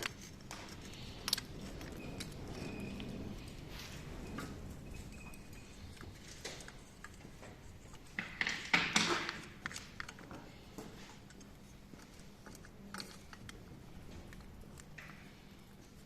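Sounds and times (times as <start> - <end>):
metal parts clattering: 0.0 - 10.4
light clicks and taps of tools: 5.2 - 16.0.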